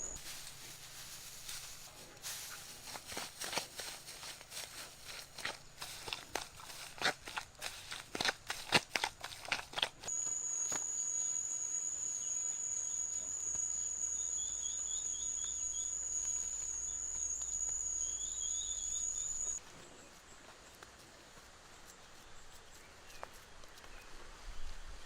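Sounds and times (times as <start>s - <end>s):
insect high-pitched song: 10.1s - 19.6s
bird twitters: 10.6s - 19.6s.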